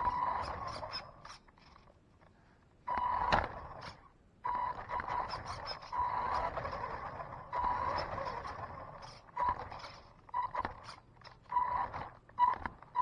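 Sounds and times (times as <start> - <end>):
electric motor whining: 4.5 - 12.8.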